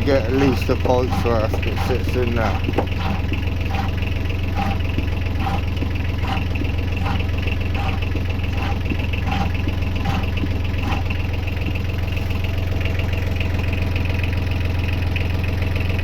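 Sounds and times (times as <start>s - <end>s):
boat engine idling: 0.0s - 16.0s.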